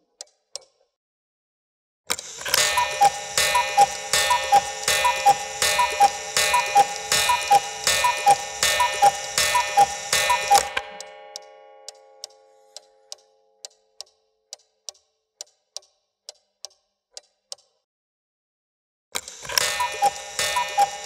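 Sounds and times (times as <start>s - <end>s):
cuckoo clock call: 2.4s - 11.6s, 19.4s - 21.0s
clock ticking: 2.4s - 16.8s, 19.4s - 21.0s.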